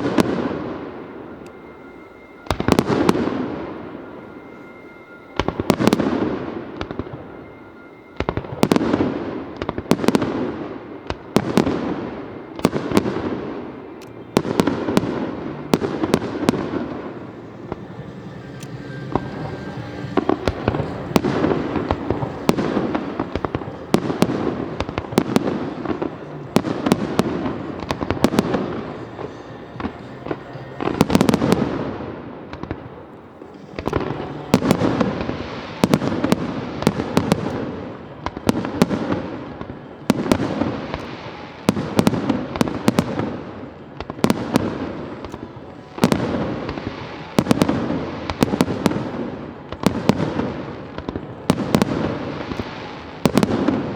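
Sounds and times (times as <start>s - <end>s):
firework crackles: 0.0s - 53.9s
firework shells bursting: 12.6s - 43.3s.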